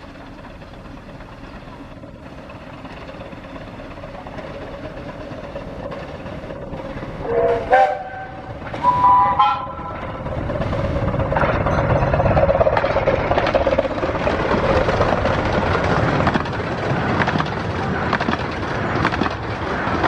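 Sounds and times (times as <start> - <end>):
train running noise: 0.0 - 20.0
steam locomotive whistle blasts: 7.2 - 10.0.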